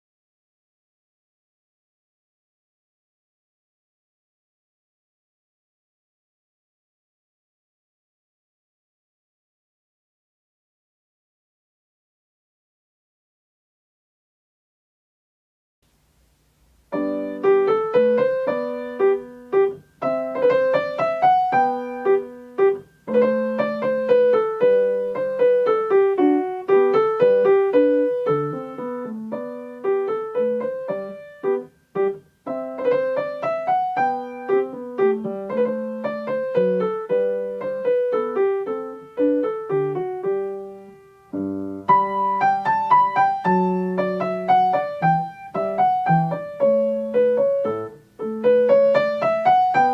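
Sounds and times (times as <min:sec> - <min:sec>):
slow classical piano piece: 0:16.0 - 0:49.9.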